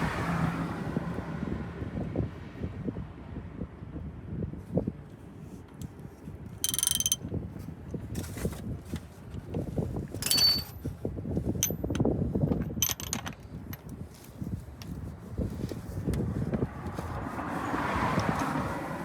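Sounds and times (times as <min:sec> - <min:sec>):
metal tools clinking: 0:06.6 - 0:07.2, 0:10.1 - 0:10.9, 0:11.6 - 0:14.2
ratchet wrench clicking: 0:06.6 - 0:07.2, 0:10.2 - 0:10.7, 0:12.7 - 0:13.9.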